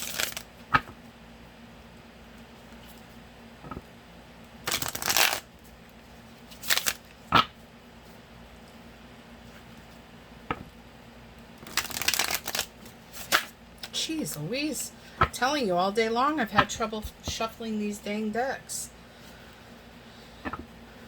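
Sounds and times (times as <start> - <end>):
cards shuffling: 0.0 - 1.0, 4.7 - 5.5, 6.5 - 7.5, 11.6 - 14.4.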